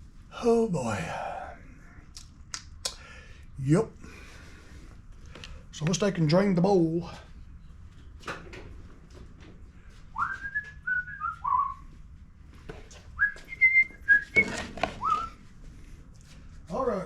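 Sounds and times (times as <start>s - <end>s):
man whistling a tune: 10.2s - 11.8s, 13.2s - 14.4s, 15.0s - 15.3s.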